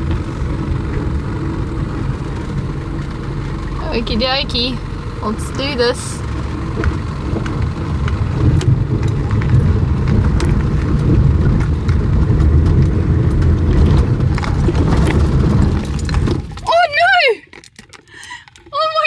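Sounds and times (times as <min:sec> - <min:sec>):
knocks and clicks: 0:00.0 - 0:16.7
truck engine rumbling under load: 0:00.0 - 0:19.0.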